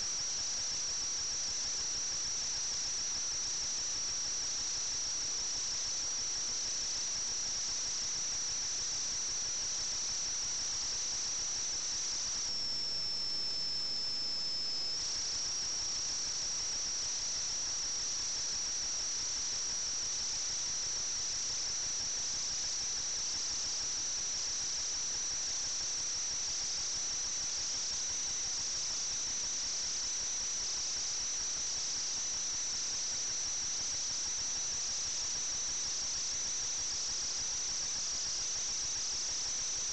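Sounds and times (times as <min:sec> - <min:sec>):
high-pitched whine: 0:10.9 - 0:17.0.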